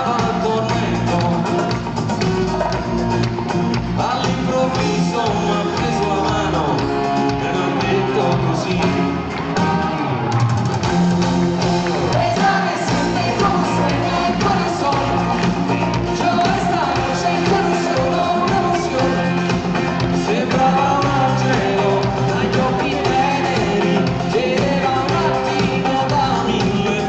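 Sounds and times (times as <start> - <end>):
person singing: 0.0 - 3.1, 3.8 - 10.5, 12.0 - 27.0
live pop-rock band: 0.0 - 27.0.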